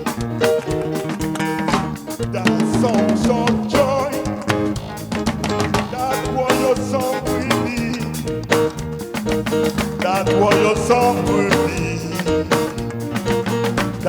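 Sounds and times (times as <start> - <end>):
upbeat music with drum beat: 0.0 - 14.0
person singing: 2.1 - 8.7, 9.9 - 14.0.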